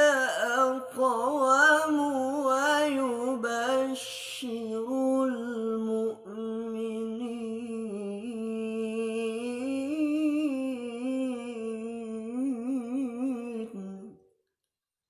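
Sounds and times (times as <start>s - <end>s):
person reciting melodically: 0.0s - 14.2s.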